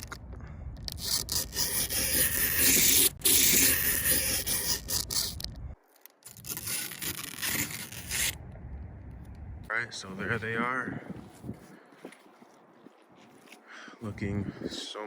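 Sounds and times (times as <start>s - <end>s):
plastic film being peeled off: 6.1s - 8.4s.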